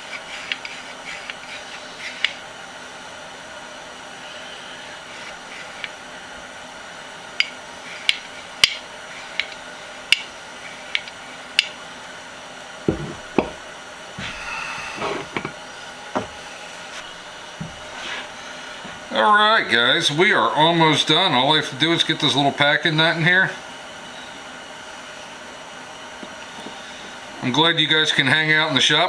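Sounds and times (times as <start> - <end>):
dull metal knocks: 12.9 - 13.6.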